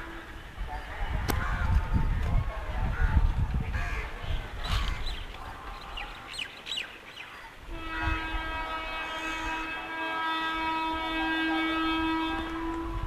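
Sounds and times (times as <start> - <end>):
locomotive horn blast: 7.7 - 13.0.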